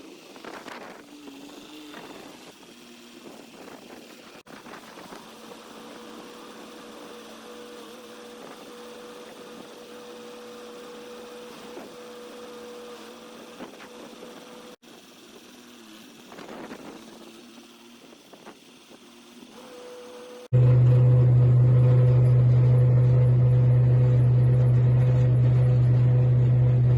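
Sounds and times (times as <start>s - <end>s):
wind noise: 0.0s - 5.6s
engine humming: 19.2s - 26.9s.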